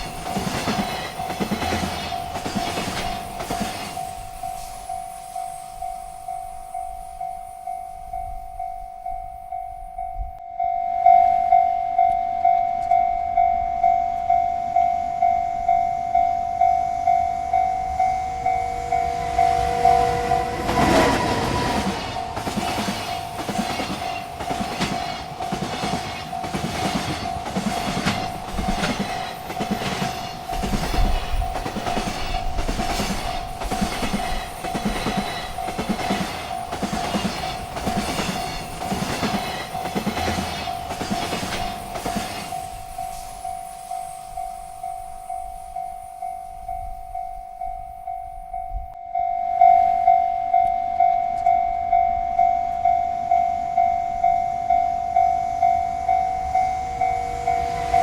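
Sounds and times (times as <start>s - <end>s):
train wheels clickety-clack: 0.0s - 8.5s, 17.6s - 47.2s
freight train rumbling: 0.0s - 58.0s
railroad crossing bell ringing: 0.0s - 58.0s.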